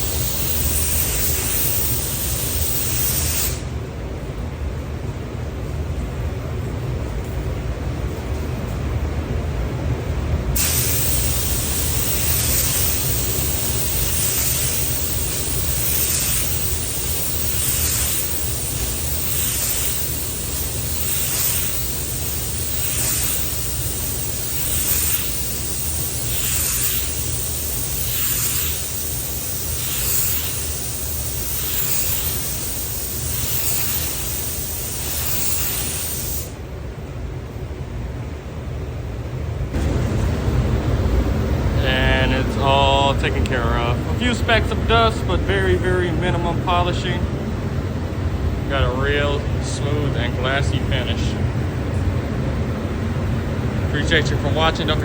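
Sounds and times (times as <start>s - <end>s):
spray gun hissing: 0.0s - 3.8s, 10.6s - 36.6s.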